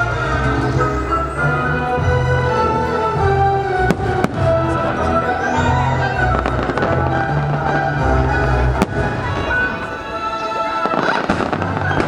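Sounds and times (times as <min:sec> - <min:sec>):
music over loudspeakers: 0:00.0 - 0:12.0
fireworks bursting and crackling: 0:03.7 - 0:12.0.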